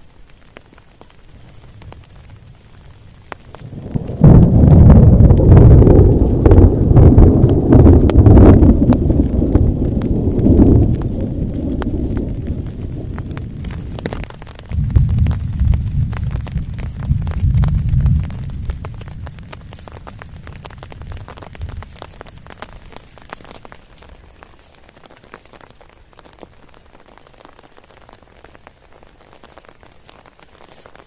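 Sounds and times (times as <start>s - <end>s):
steady rain: 0.0s - 31.0s
thunder rumbling: 1.6s - 24.4s
rapid high pulsing chirp: 13.6s - 24.0s.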